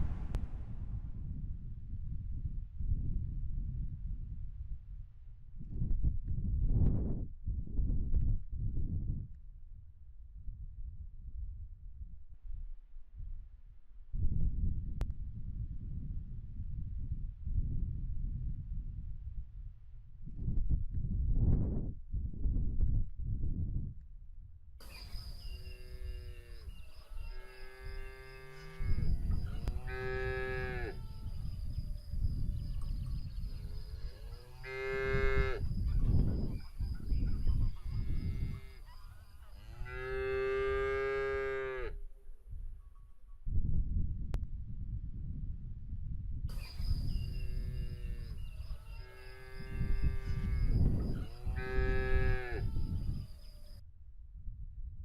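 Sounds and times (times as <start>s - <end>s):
low rumbling background: 0.0s - 2.8s
low rumble: 0.0s - 5.7s
cow mooing: 25.8s - 31.3s, 34.0s - 35.7s, 38.0s - 38.9s, 39.6s - 42.0s, 49.0s - 53.0s
cattle mooing: 49.0s - 52.8s.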